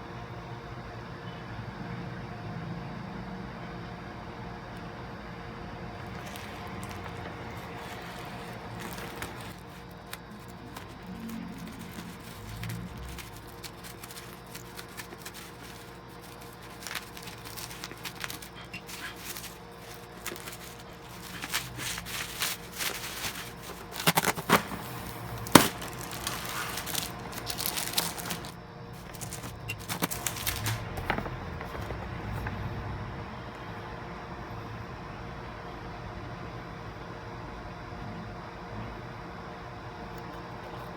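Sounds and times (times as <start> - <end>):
packaging rustling and crinkling: 6.0 - 32.7.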